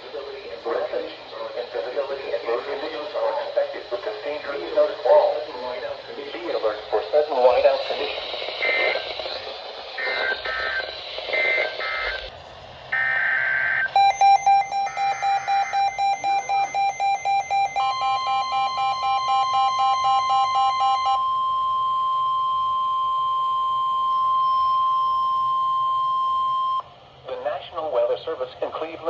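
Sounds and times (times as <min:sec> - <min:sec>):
harsh digital data bursts: 0:07.5 - 0:12.3, 0:13.0 - 0:21.2
steady alarm tone: 0:09.9 - 0:12.3, 0:12.9 - 0:26.8
electronic alarm beeping: 0:10.0 - 0:12.3, 0:13.0 - 0:26.8.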